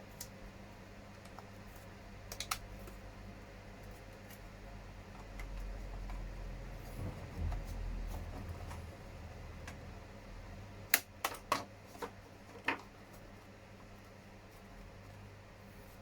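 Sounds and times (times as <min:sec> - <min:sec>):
sharp plastic clicks: 0:02.3 - 0:03.0, 0:10.9 - 0:11.7.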